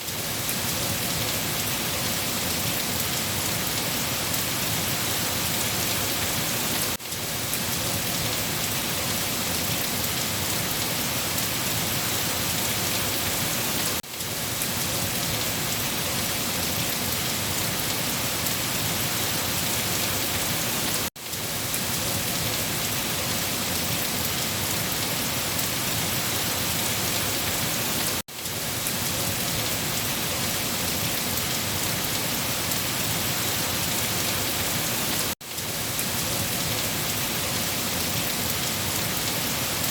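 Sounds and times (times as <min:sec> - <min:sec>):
heavy rain falling: 0:00.0 - 0:39.9.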